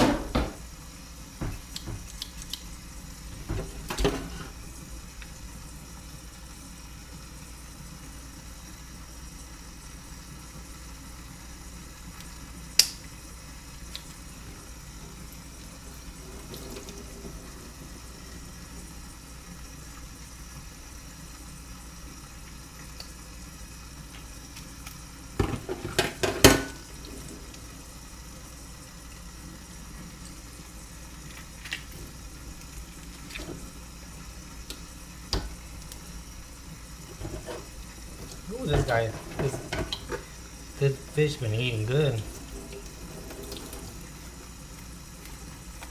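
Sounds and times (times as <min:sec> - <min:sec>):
loud knocks in sink: 0:00.0 - 0:00.6
tap water running into sink: 0:00.0 - 0:05.5, 0:13.8 - 0:20.2, 0:22.2 - 0:45.9.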